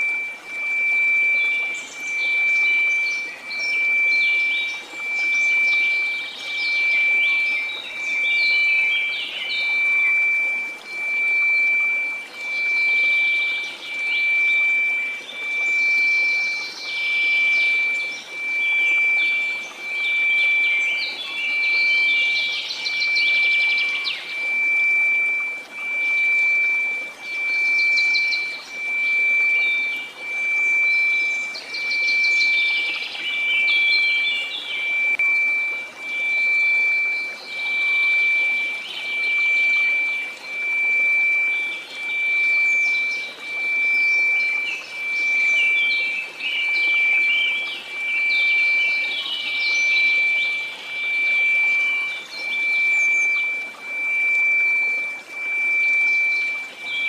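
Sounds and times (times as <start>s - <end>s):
pulsing pure tone: 0.0s - 57.0s.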